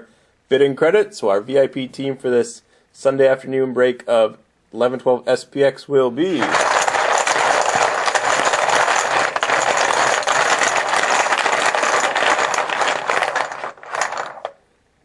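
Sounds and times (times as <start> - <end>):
small hard objects rattling: 6.3 - 14.6.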